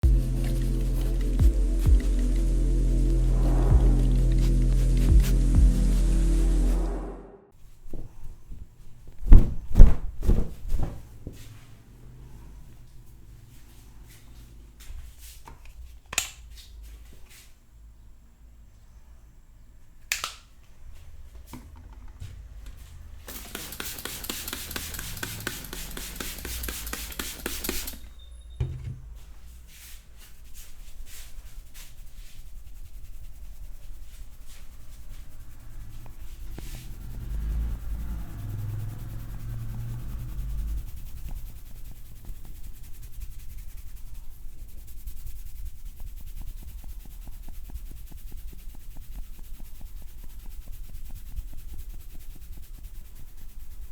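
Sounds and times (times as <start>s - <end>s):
hands rubbing skin and hair: 0.0s - 6.8s, 22.9s - 28.1s, 29.0s - 53.9s
low thuds: 0.0s - 7.4s, 9.2s - 11.1s, 28.6s - 29.4s
sharp click: 20.1s - 20.5s.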